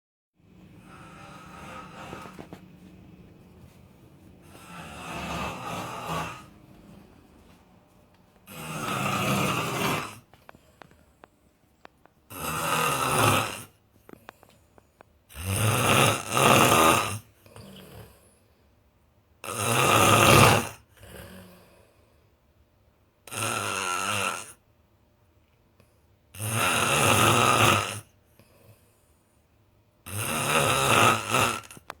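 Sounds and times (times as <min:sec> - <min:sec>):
quiet breath: 0:00.4 - 0:07.8, 0:08.5 - 0:11.9, 0:21.0 - 0:22.6, 0:28.2 - 0:29.8
person snoring: 0:00.7 - 0:02.6, 0:04.4 - 0:06.8, 0:08.4 - 0:10.3, 0:12.3 - 0:13.8, 0:15.3 - 0:18.2, 0:19.4 - 0:21.7, 0:23.3 - 0:24.6, 0:26.4 - 0:28.1, 0:30.1 - 0:31.9.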